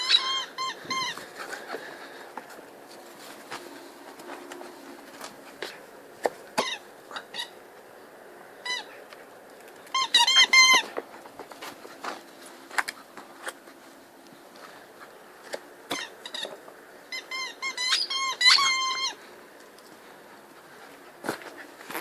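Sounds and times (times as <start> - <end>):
squeaky dog toy squeaking: 0.0 - 1.2, 9.9 - 10.8, 17.1 - 19.2.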